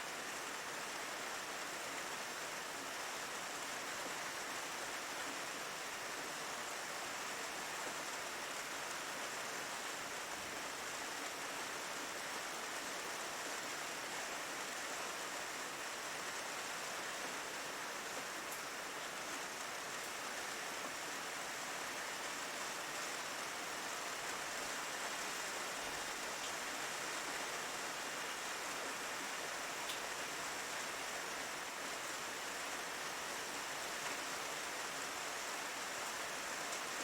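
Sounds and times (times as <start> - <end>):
steady rain hiss: 0.0 - 37.0.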